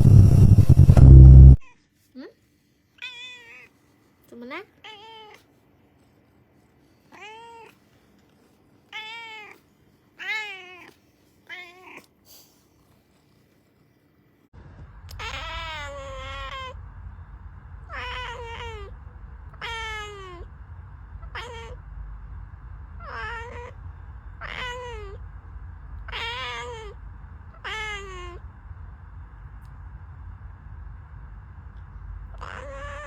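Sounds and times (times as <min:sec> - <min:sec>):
low rumble: 0:00.0 - 0:01.6, 0:14.6 - 0:33.0
cat meowing: 0:03.0 - 0:03.7, 0:04.8 - 0:05.5, 0:07.1 - 0:07.8, 0:08.9 - 0:09.6, 0:10.2 - 0:12.1, 0:15.1 - 0:16.8, 0:17.8 - 0:20.6, 0:21.2 - 0:21.8, 0:23.0 - 0:25.2, 0:26.0 - 0:28.4, 0:32.3 - 0:33.0.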